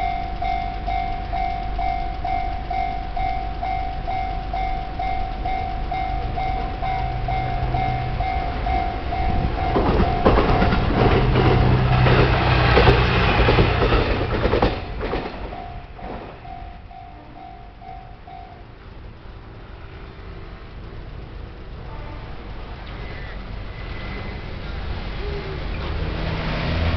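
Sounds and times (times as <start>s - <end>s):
level-crossing warning bell ringing: 0.0s - 21.4s
diesel railcar engine hum: 0.0s - 26.9s
train wheels clattering over rails: 0.0s - 26.9s.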